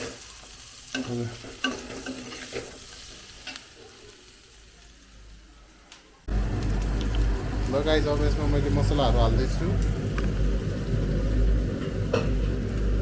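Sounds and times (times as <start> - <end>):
onions sizzling in pan: 0.0 - 13.0
spatula scraping pan: 1.0 - 3.6.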